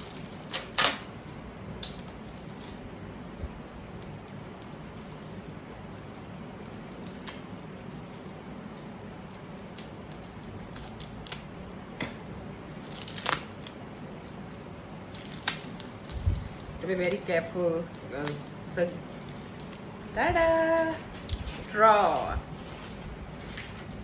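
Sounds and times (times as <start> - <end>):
steady background hum: 0.0 - 24.0
plastic package crinkling: 3.9 - 11.8, 12.7 - 20.1.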